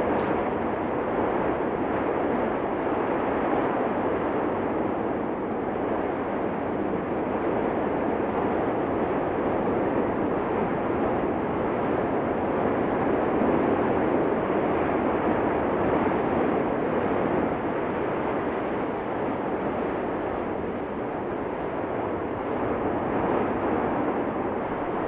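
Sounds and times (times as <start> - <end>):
volcano roaring: 0.0 - 25.0.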